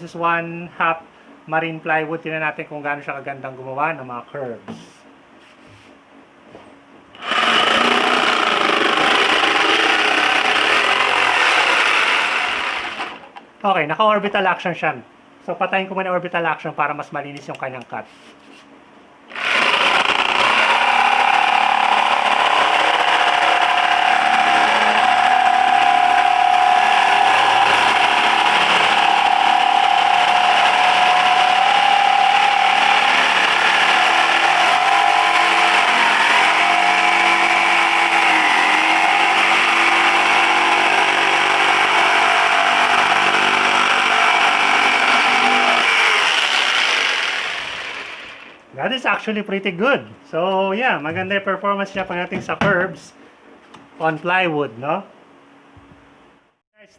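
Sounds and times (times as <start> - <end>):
jigsaw cutting plywood: 7.2 - 13.3, 19.3 - 48.6.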